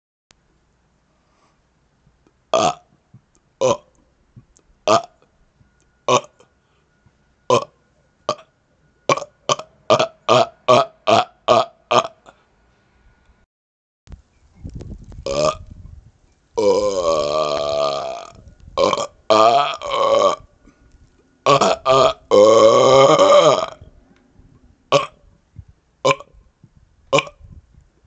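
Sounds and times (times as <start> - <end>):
man belching: 2.5 - 2.9, 3.6 - 4.0, 4.9 - 5.2, 6.1 - 6.4, 7.5 - 8.4, 9.1 - 12.4, 15.2 - 15.7, 16.6 - 20.5, 21.4 - 23.9, 24.9 - 25.2, 26.0 - 26.4, 27.1 - 27.4.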